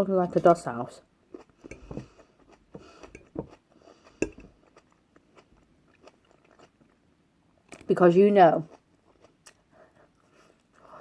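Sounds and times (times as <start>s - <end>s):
cutlery clicking on a plate: 4.2s - 4.5s.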